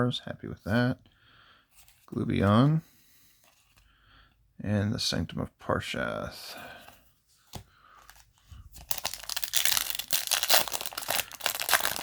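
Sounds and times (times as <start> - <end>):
foil wrapper tearing and crinkling: 8.8 - 12.0.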